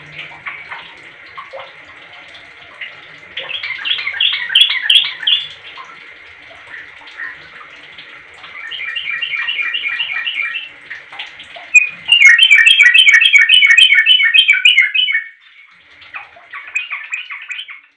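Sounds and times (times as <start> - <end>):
bulbul singing rapid chirps: 16.6 - 17.8.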